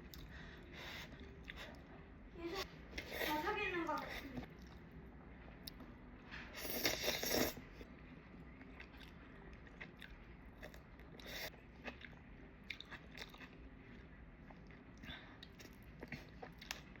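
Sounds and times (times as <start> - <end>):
person chewing noodles: 0.0 - 2.0, 6.5 - 17.0.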